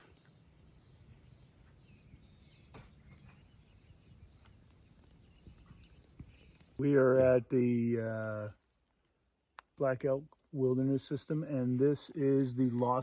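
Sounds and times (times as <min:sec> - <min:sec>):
insect chirping: 0:00.0 - 0:06.8.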